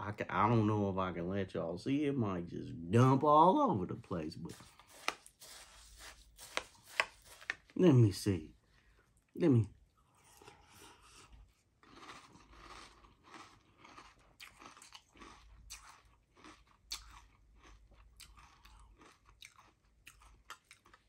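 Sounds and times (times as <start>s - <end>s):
chewing crunchy cereal: 4.5s - 7.8s, 10.0s - 21.0s.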